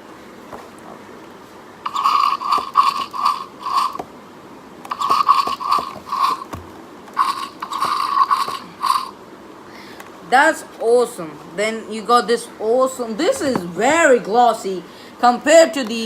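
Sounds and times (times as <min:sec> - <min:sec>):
toy figure ratcheting clicks: 0:01.9 - 0:04.0, 0:04.9 - 0:06.5, 0:07.2 - 0:09.1.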